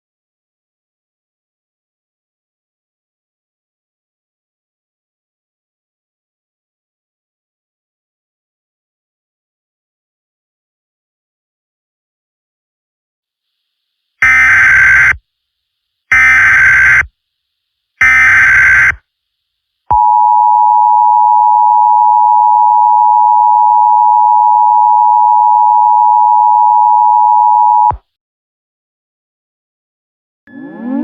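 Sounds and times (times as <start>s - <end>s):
two-pitch attention tone: 30.5s - 31.0s.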